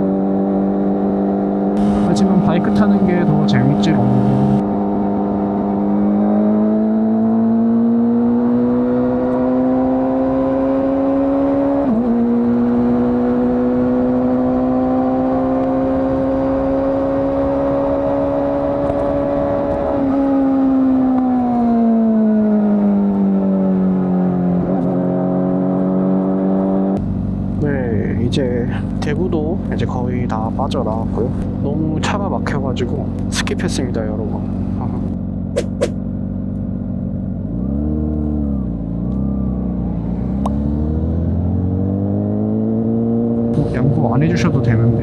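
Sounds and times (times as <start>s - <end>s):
motorcycle engine revving: 0.0s - 21.1s, 37.0s - 43.8s
wind rush: 35.6s - 36.0s.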